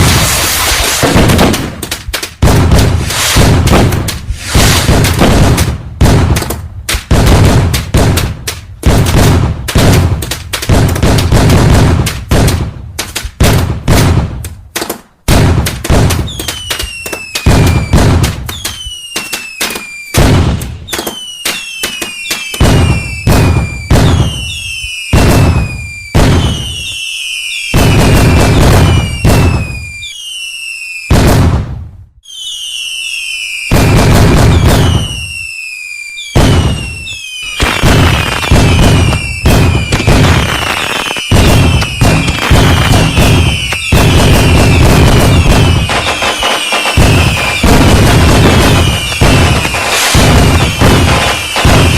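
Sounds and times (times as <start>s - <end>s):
falling firework whistles: 0.0s - 1.2s, 2.7s - 3.7s, 4.3s - 5.2s, 16.2s - 31.3s, 32.2s - 51.9s
fireworks bangs and crackle: 0.0s - 51.9s.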